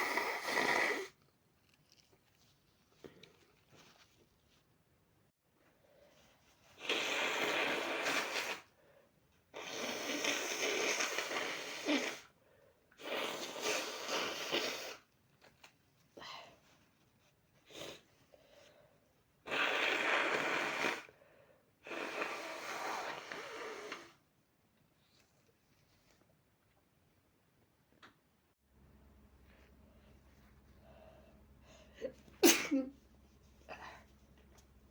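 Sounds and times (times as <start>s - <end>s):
person sniffing: 0.0s - 1.2s
person sneezing: 32.0s - 33.0s.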